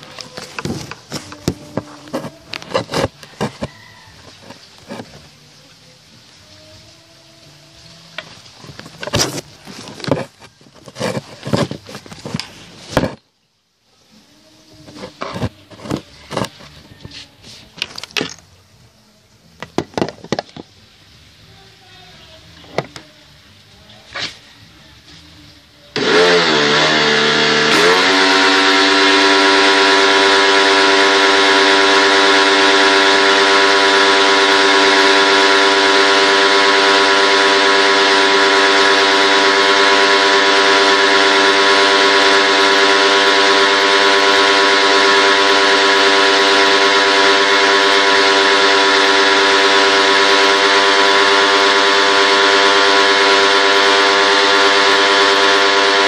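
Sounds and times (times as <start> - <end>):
motor humming: 26.0 - 56.0.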